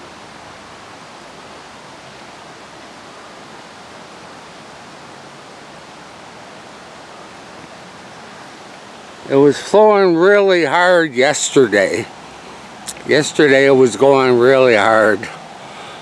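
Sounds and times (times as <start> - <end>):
creek running water: 0.0 - 16.0.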